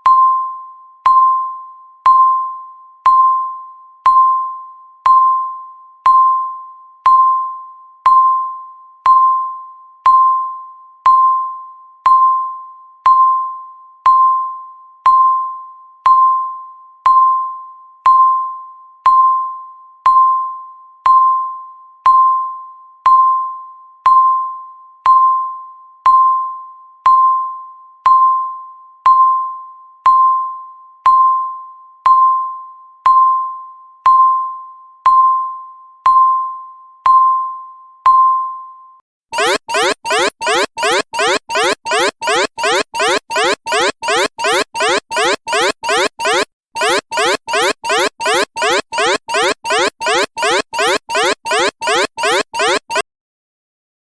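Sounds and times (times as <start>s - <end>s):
bell-like timer beep: 39.4s - 53.0s.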